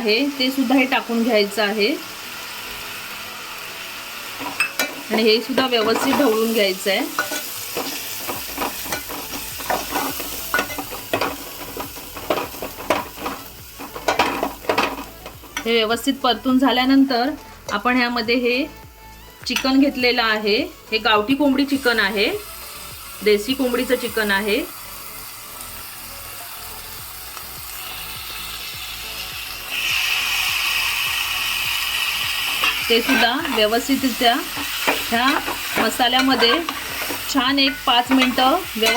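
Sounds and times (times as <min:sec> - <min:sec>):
paste sizzling in hot oil: 0:00.0 - 0:18.0, 0:20.8 - 0:38.9
spoon scraping a pot: 0:07.1 - 0:15.7, 0:32.5 - 0:33.8, 0:34.4 - 0:38.9.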